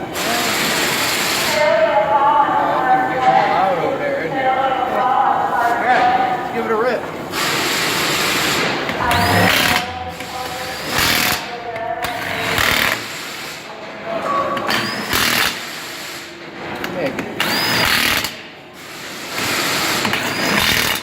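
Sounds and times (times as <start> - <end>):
impact wrench hammering: 8.6 - 13.3.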